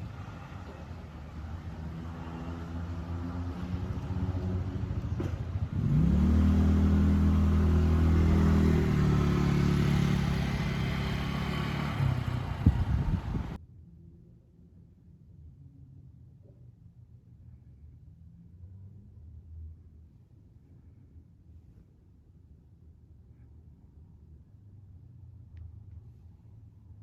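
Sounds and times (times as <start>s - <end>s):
vehicle engine passing by: 0.0s - 13.6s.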